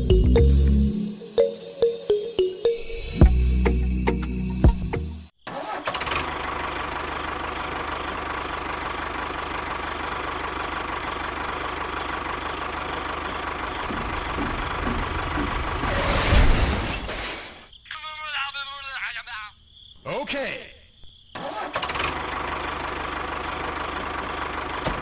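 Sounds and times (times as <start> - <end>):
motor chugging: 12.2 - 16.1.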